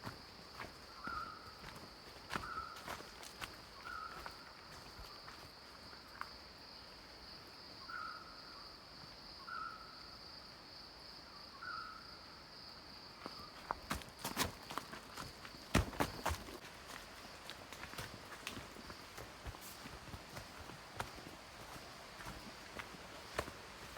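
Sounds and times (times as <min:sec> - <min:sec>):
insects droning: 0:00.0 - 0:23.9
footsteps: 0:13.6 - 0:23.9.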